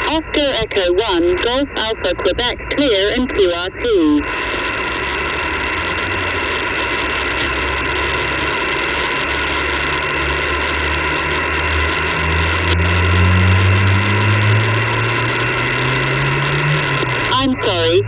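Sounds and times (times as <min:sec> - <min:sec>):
radio receiver hiss: 0:00.0 - 0:18.0
low hum rising in pitch: 0:03.8 - 0:18.0.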